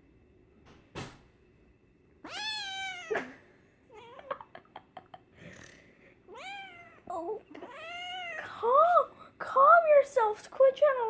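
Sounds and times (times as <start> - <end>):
thump: 0.6 - 1.3
kitten meowing: 2.2 - 3.3, 6.3 - 8.5.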